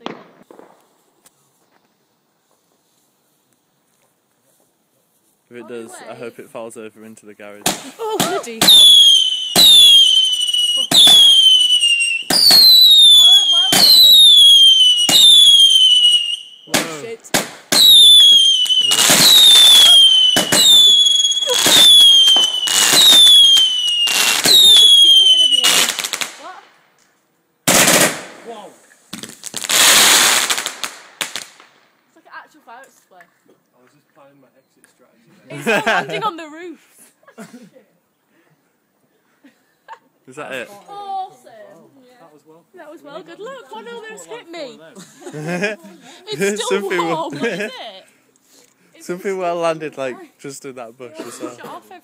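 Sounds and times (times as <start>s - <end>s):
whistling fireworks: 0.0s - 3.1s, 8.6s - 26.4s, 29.1s - 31.8s.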